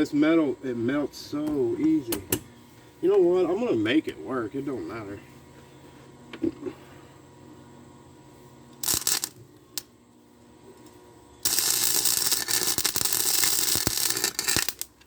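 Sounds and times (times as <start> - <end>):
welding arc crackling: 8.7 - 9.9, 10.8 - 15.0.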